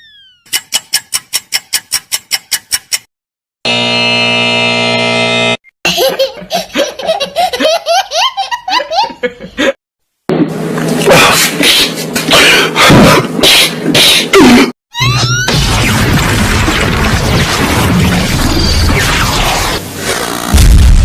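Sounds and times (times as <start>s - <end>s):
buzzer-like chord: 3.6s - 5.6s
sped-up cartoon laugh: 5.9s - 9.8s.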